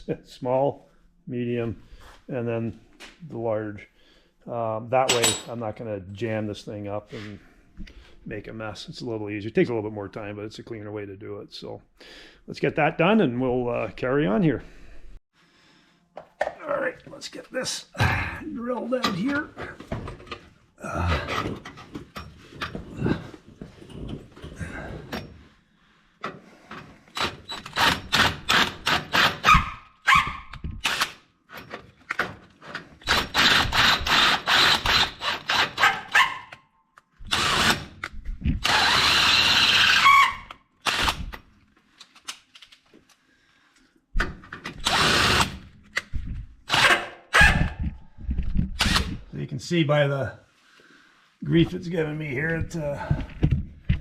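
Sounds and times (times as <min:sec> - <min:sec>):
power drill boring into steel: 0:27.1 - 0:29.5, 0:33.0 - 0:35.8, 0:37.3 - 0:37.9, 0:38.6 - 0:41.3, 0:44.8 - 0:45.6.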